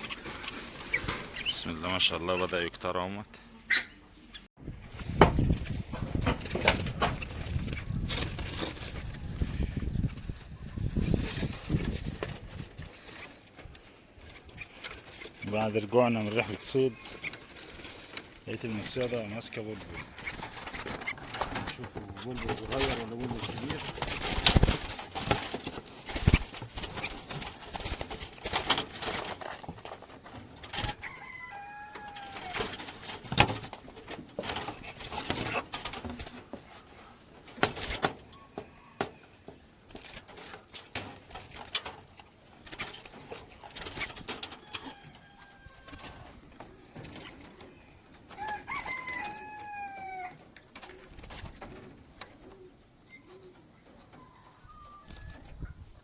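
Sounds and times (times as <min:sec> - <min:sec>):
bird calls: 0:03.6 - 0:04.5.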